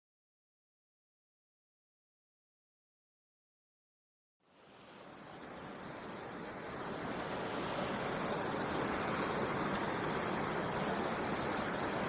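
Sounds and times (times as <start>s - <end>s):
stream water rushing: 4.9s - 12.0s.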